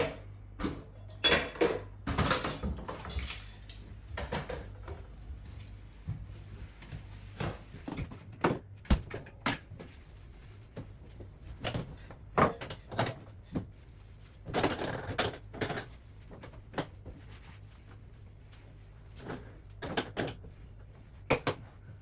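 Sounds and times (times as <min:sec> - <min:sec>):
dishes clattering: 0:01.3 - 0:05.0
scraping and rustling: 0:02.3 - 0:08.0, 0:09.8 - 0:21.8.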